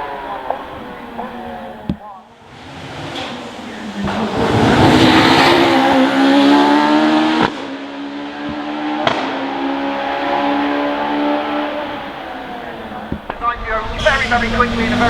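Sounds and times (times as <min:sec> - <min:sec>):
racing car engine at full throttle: 0:00.0 - 0:15.0
sharp cracks: 0:12.9 - 0:15.0.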